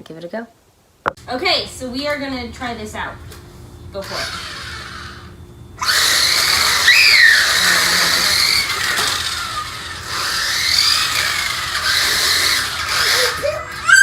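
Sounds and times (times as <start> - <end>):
rc car motor whining: 4.0 - 14.0.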